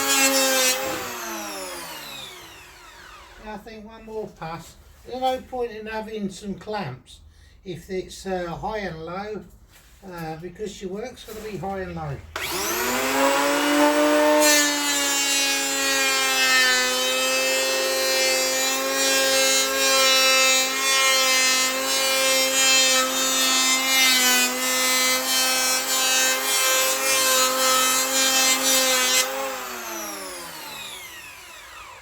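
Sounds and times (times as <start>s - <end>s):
electric tool cutting wood: 0.0s - 3.4s, 12.4s - 32.0s.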